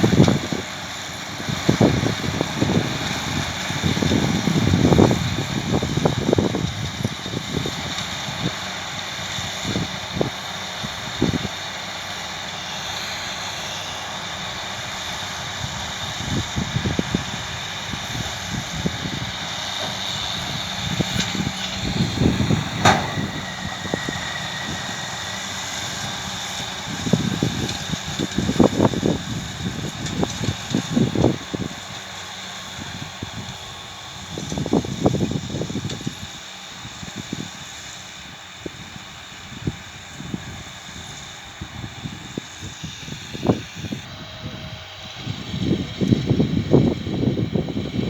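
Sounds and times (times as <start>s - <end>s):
tractor engine running: 0.0s - 48.0s
low rumbles: 20.4s - 24.8s
sharp click: 22.8s - 23.4s.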